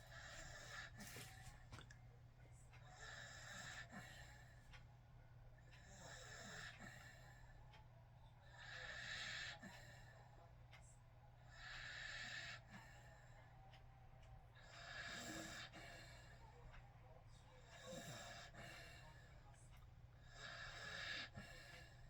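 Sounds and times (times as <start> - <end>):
faint snoring: 2.9 - 4.5, 5.8 - 7.3, 8.5 - 10.1, 14.7 - 16.5, 17.7 - 19.1, 20.2 - 22.0.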